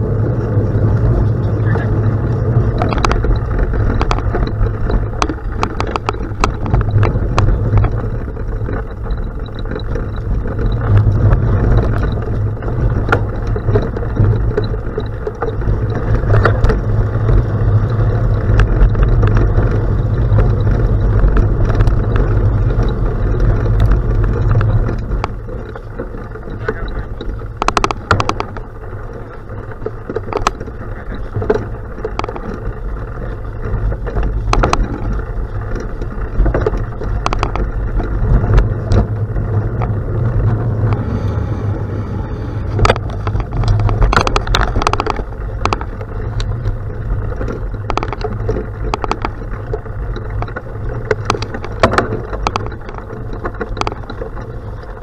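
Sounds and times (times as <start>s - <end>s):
bicycle rattles from bumps: 0.0s - 55.0s
bicycle tyres on gravel: 0.0s - 55.0s
wind on microphone: 0.0s - 55.0s.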